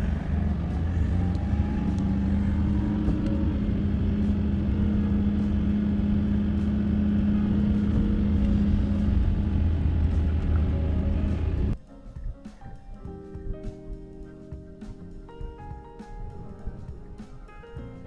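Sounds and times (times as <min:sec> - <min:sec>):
vehicle engine and road rumble: 0:00.0 - 0:11.8.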